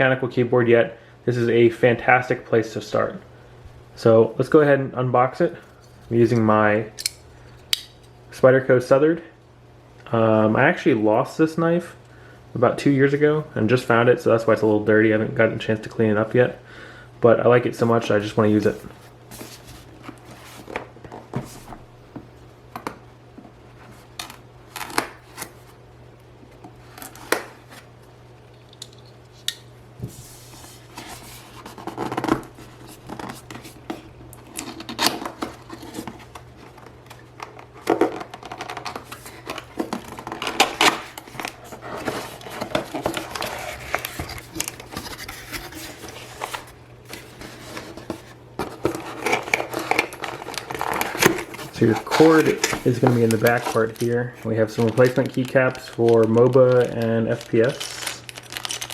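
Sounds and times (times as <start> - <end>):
cardboard scratching and tearing: 40.4 - 54.0.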